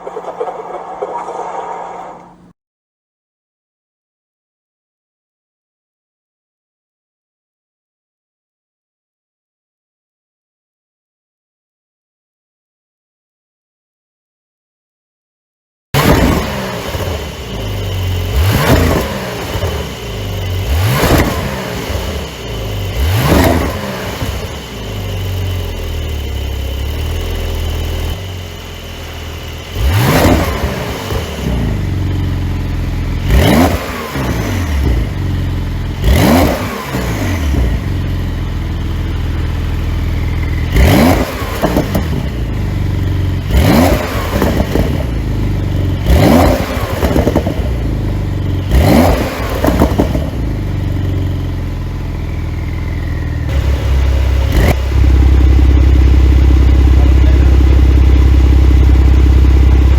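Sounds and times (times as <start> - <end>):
car engine idling and revving: 0.0 - 2.5, 16.0 - 59.9.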